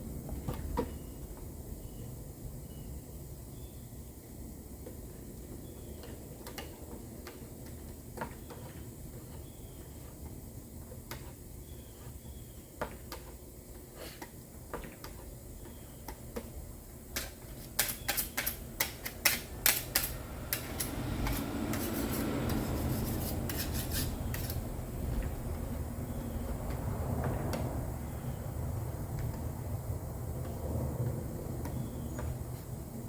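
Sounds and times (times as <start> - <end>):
filler scraping with spreader: 6.2 - 15.3, 17.2 - 25.3.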